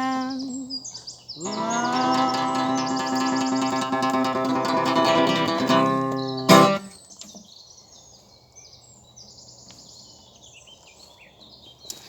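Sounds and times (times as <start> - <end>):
birds chirping: 0.0 - 12.0
acoustic guitar chord: 1.5 - 7.0
loud guitar strum: 1.5 - 7.0.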